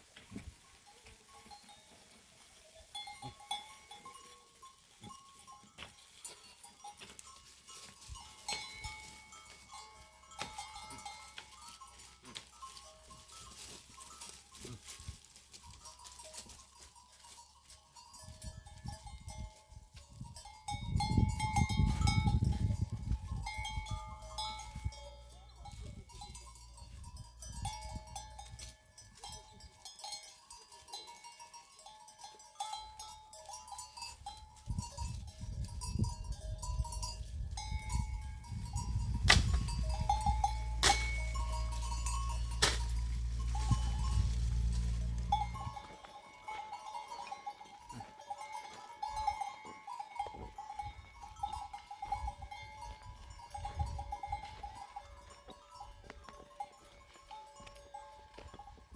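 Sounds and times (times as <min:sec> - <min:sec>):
animal bells clinking: 0:00.0 - 0:58.9
low rumble: 0:38.6 - 0:45.8.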